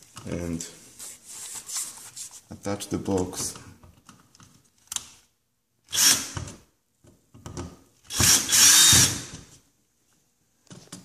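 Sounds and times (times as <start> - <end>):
power drill driving screws: 5.9 - 6.5, 8.1 - 9.4.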